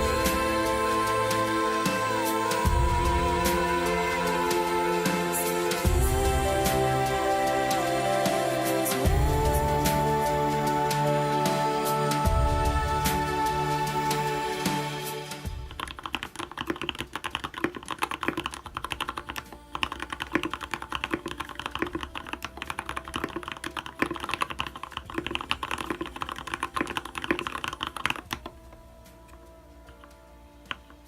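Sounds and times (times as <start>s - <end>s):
mechanical keyboard typing: 15.5s - 28.8s.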